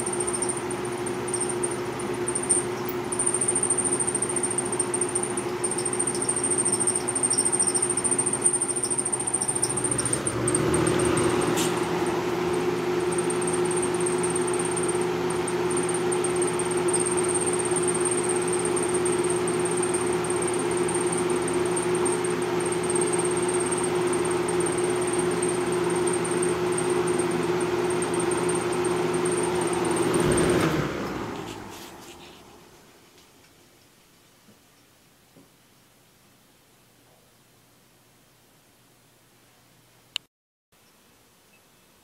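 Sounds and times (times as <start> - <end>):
fan motor humming: 0.0 - 33.6
high-pitched bearing squeal: 1.3 - 11.9.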